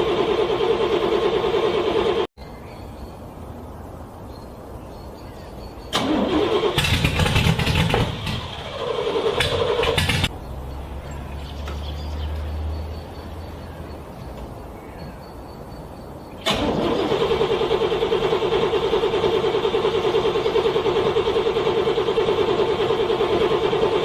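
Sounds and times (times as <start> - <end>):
car starter cranking engine: 0.0 - 2.3, 5.9 - 10.3, 16.4 - 24.0.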